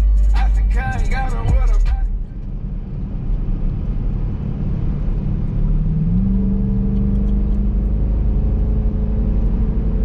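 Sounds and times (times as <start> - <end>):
car engine low rumble: 0.0 - 10.0.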